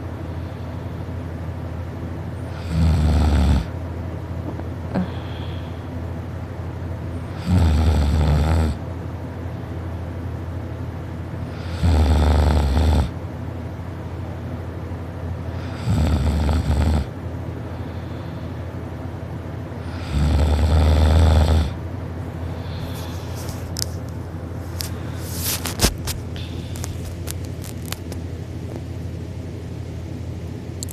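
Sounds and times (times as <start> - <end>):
steady low hum: 0.0 - 30.9
person snoring loudly: 2.5 - 3.7, 7.3 - 8.8, 11.5 - 13.1, 15.6 - 17.1, 19.8 - 21.8.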